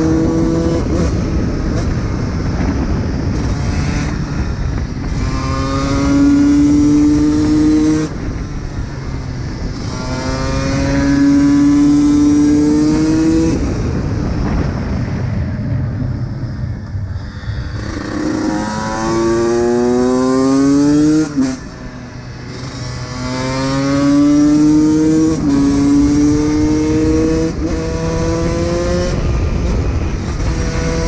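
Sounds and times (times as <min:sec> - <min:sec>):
dirt bike engine accelerating: 0:09.6 - 0:31.0.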